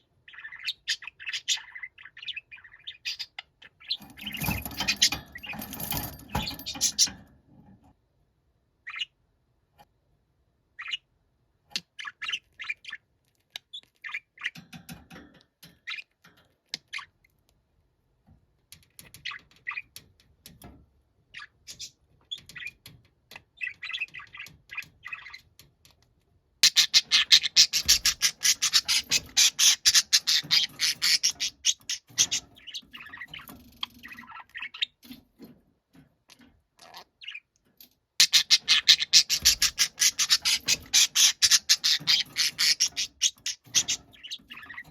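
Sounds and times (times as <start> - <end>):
budgerigar chirps and squawks: 0.0 - 5.2, 8.8 - 9.2, 10.8 - 11.1, 26.6 - 35.1, 38.2 - 44.9.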